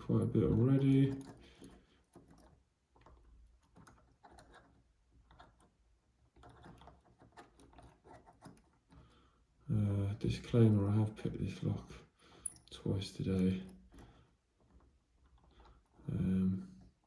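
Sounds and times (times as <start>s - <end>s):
lock pick clicking and scraping: 0.0s - 9.2s, 12.3s - 16.1s.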